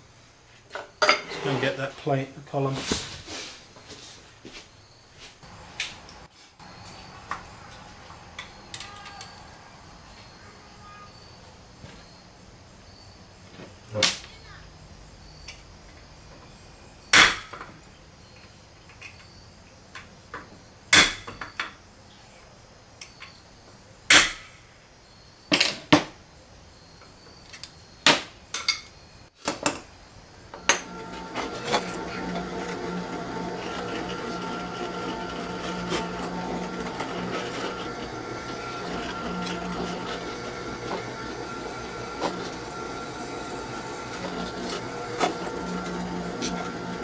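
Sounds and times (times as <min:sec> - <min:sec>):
small motor running: 0:30.6 - 0:47.0.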